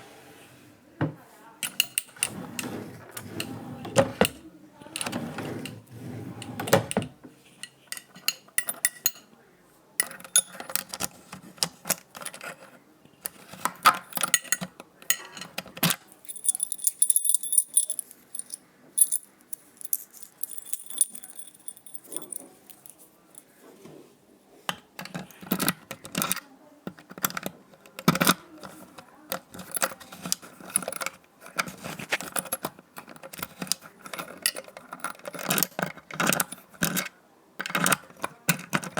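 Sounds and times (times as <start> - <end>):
metal keys jangling: 16.2 - 23.0.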